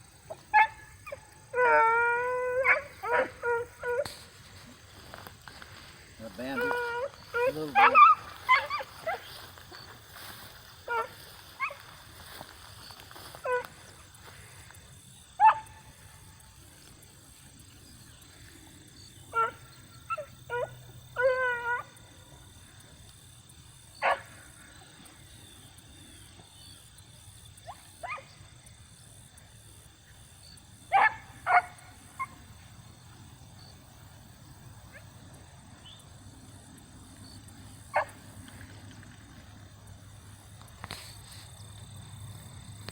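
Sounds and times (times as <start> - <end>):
hounds baying and yelping: 0.3 - 14.7, 15.4 - 16.1, 18.2 - 23.0, 23.9 - 24.8, 27.6 - 28.4, 30.4 - 33.7, 37.2 - 38.5.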